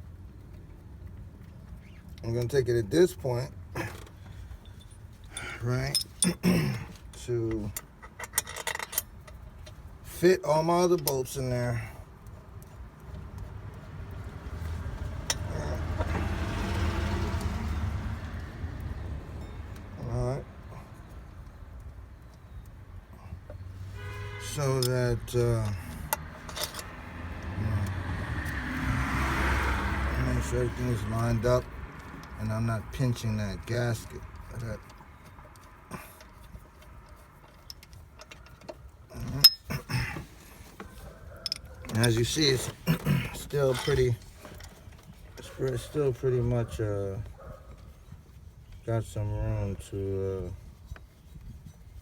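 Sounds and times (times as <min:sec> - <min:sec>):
vehicle low rumble: 0:00.0 - 0:52.0
light metallic clicks of tools: 0:24.7 - 0:26.9, 0:33.7 - 0:46.0
ringing metal clink: 0:39.3 - 0:39.7.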